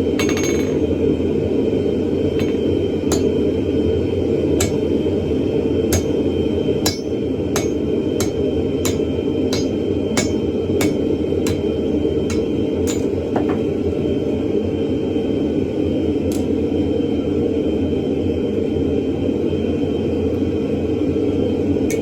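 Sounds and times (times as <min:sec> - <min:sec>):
hammer blows on hot steel: 0:02.4 - 0:03.6, 0:04.6 - 0:05.1, 0:05.8 - 0:13.3.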